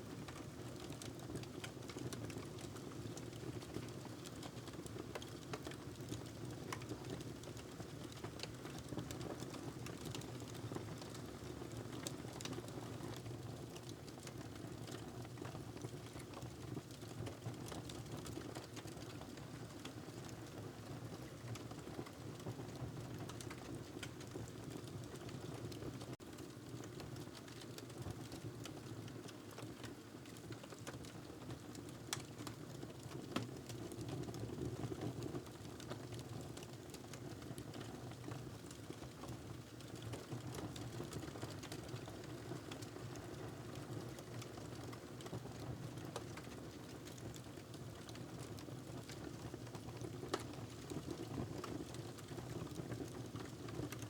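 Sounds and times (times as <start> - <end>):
wood fire crackling: 39.8 - 45.4, 46.1 - 54.0.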